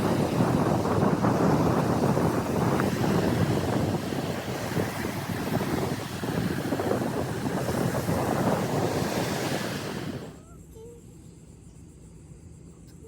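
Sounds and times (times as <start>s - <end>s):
ocean surf washing on beach: 0.0s - 10.4s
wind rumbling on microphone: 0.0s - 10.4s.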